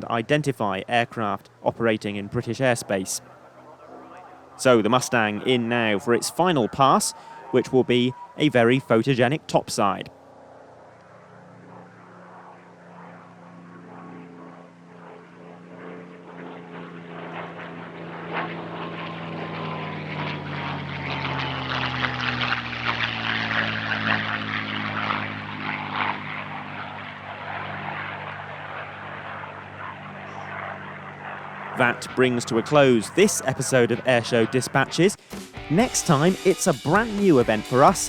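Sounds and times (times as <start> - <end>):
propeller plane engine flypast: 0.0 - 38.0.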